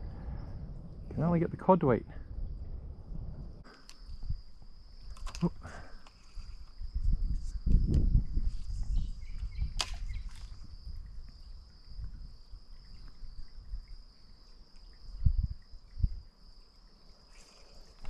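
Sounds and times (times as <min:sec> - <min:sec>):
low rumbling noise: 0:00.0 - 0:04.4
insects droning: 0:00.0 - 0:18.0.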